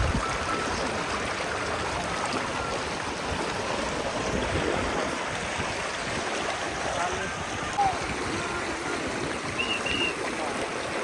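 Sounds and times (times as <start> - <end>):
river rushing over stones: 0.0 - 11.0.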